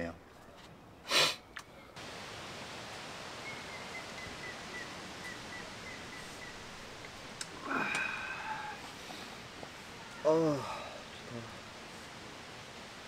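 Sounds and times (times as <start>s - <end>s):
forest rustling: 0.0s - 13.0s.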